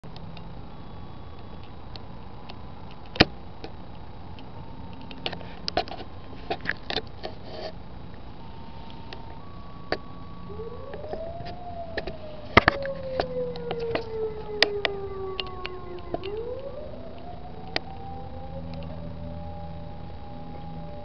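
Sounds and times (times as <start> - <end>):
outdoor background noise: 0.0 - 21.0
warning siren winding up: 8.4 - 21.0.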